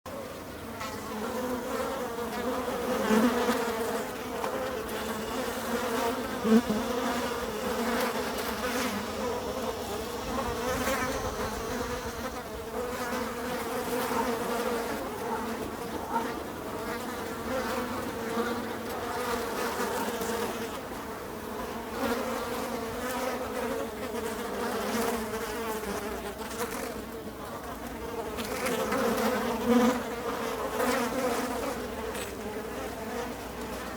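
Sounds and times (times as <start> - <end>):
flies buzzing: 0.1 - 33.9.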